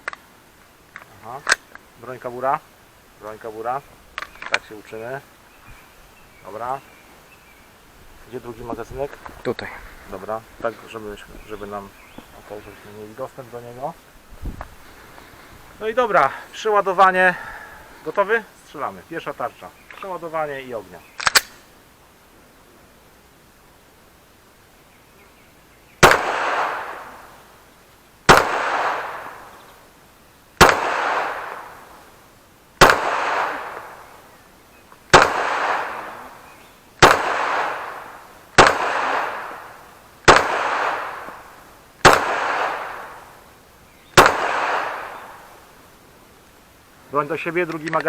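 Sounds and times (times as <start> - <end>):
pistol shots echoing: 26.0 - 27.5, 28.3 - 29.8, 30.6 - 32.1, 32.8 - 34.3, 35.1 - 43.5, 44.2 - 45.6.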